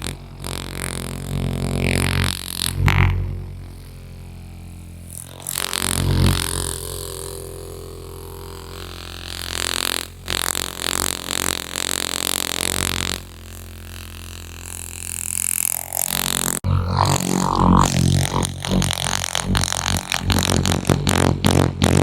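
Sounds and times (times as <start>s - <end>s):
low drone music: 16.6s - 22.0s
noisy swells: 16.6s - 22.0s.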